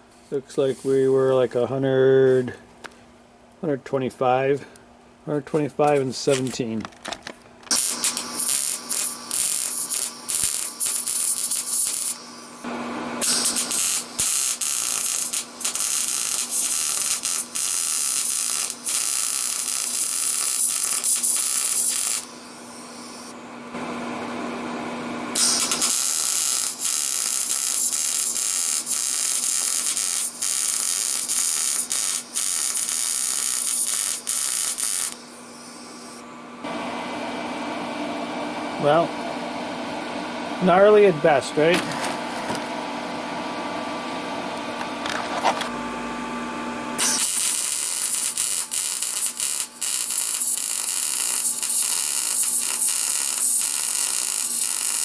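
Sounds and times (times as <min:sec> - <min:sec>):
steady low hum: 0:00.0 - 0:17.6, 0:18.2 - 0:49.8
welding arc crackling: 0:05.8 - 0:06.7, 0:07.7 - 0:23.3, 0:25.3 - 0:36.2, 0:47.0 - 0:55.0.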